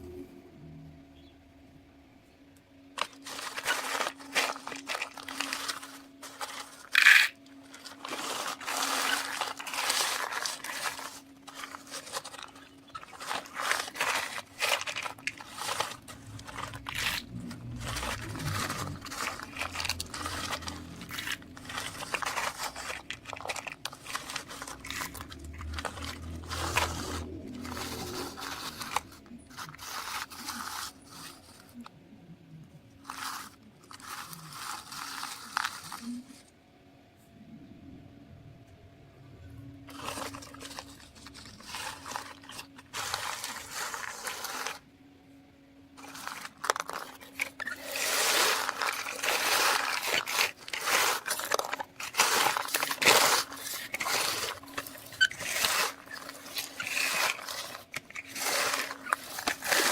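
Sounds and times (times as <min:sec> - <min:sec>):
shelled corn crunching and rustling: 0:02.9 - 0:31.9, 0:33.0 - 0:36.5, 0:39.9 - 0:44.9, 0:46.0 - 0:59.9
engine hum: 0:15.0 - 0:29.8.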